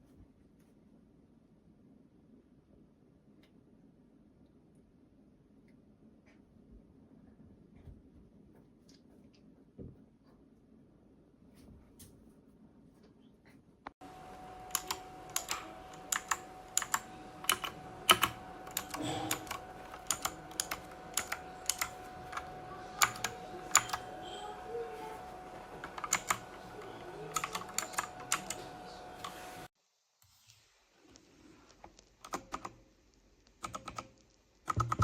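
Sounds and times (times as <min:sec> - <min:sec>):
clicky mechanical keyboard keystrokes: 0:14.7 - 0:24.2, 0:25.8 - 0:29.4, 0:31.8 - 0:32.8, 0:33.6 - 0:35.0.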